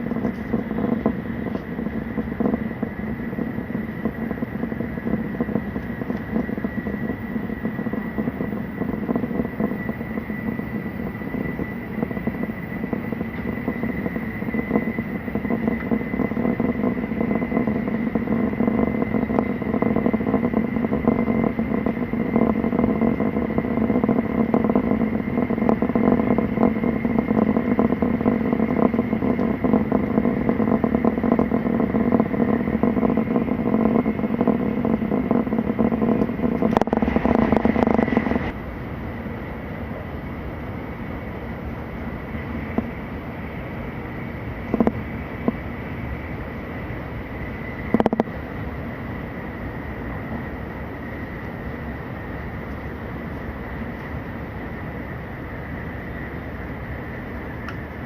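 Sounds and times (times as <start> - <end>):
thin high whine: 0.0 - 58.0
train rumble at speed: 0.0 - 58.0.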